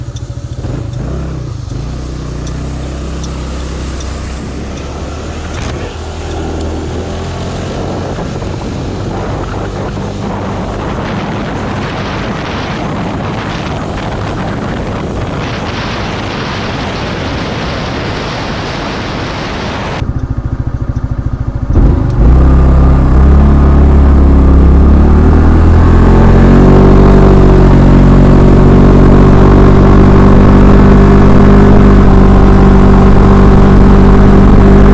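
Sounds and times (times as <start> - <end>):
scooter engine: 0.0 - 8.6, 20.0 - 34.9
wind rush on microphone: 0.0 - 34.9.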